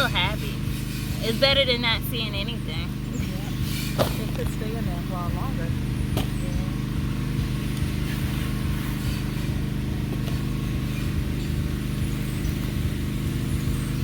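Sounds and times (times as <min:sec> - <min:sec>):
low mechanical motor hum: 0:00.0 - 0:14.0.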